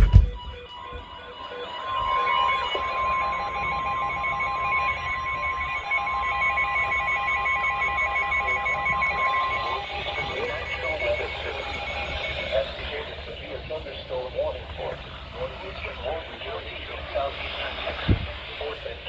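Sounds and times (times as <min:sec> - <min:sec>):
high-pitched alarm tone: 0:00.0 - 0:13.3
faint pulsing beep: 0:00.0 - 0:13.7
radio static hiss: 0:07.8 - 0:19.0.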